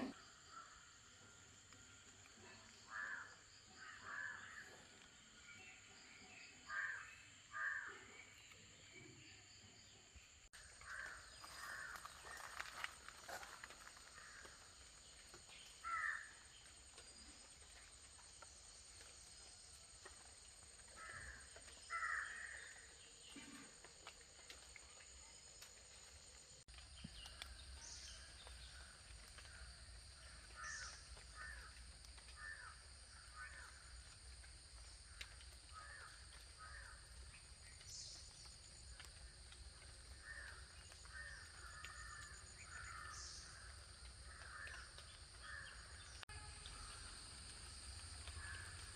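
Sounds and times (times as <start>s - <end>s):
crows cawing: 2.8s - 4.6s, 6.7s - 7.9s, 10.6s - 14.7s, 15.8s - 16.6s, 21.0s - 23.6s, 30.5s - 33.8s, 35.1s - 37.0s, 40.2s - 46.0s, 48.3s - 48.9s.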